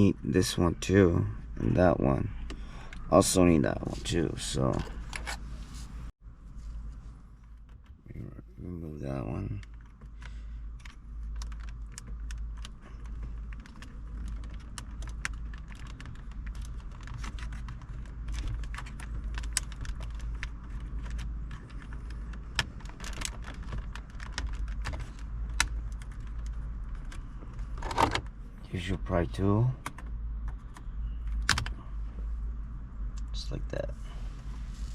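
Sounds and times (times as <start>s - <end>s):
steady low hum: 0.0s - 34.9s.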